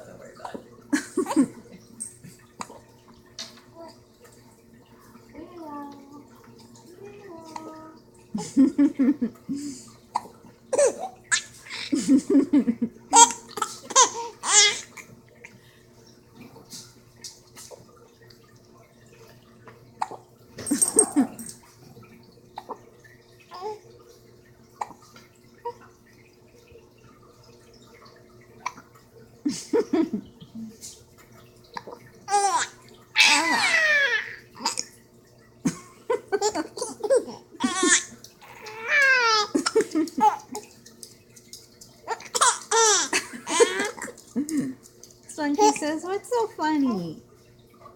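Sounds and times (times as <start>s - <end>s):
baby laughing and squealing: 13.2s - 14.9s, 32.3s - 34.8s, 36.4s - 40.6s, 42.1s - 44.0s.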